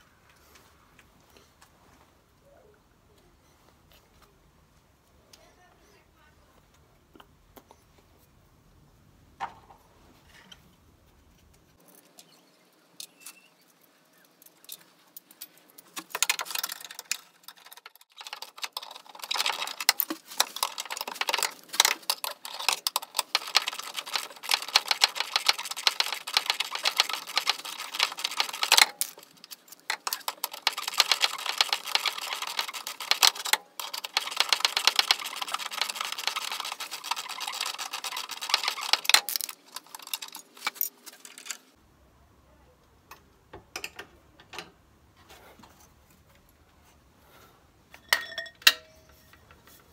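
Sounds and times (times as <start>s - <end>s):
hand tools clicking and rattling: 13.0s - 41.8s, 47.9s - 49.9s.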